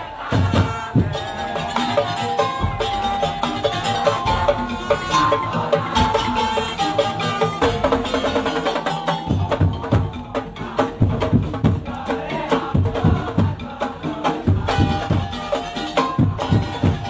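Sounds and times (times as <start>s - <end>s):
held melodic tones: 0.0s - 11.0s.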